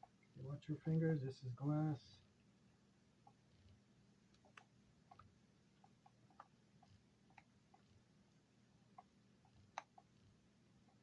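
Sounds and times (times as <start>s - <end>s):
faint small clicks and ticks: 3.2s - 11.0s.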